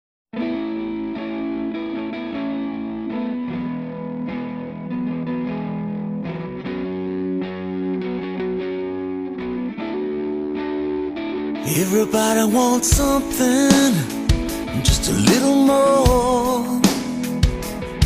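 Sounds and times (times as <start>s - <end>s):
electric guitar chords with effects: 0.3s - 18.0s.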